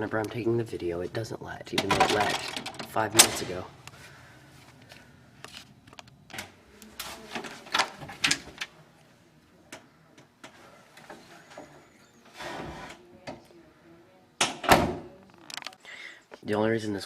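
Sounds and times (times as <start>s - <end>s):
door hardware clicks and knocks: 1.8s - 3.5s.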